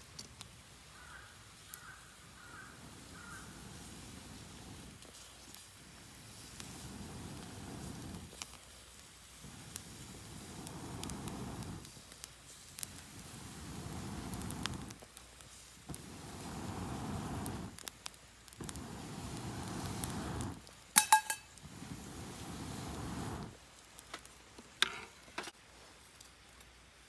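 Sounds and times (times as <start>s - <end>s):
wood fire crackling: 0.0s - 27.0s
ringing metal clinks: 21.0s - 21.5s.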